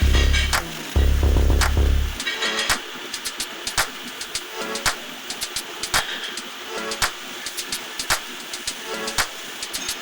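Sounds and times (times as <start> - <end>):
background music: 0.0 - 5.8
sharp percussive hits: 0.0 - 6.1.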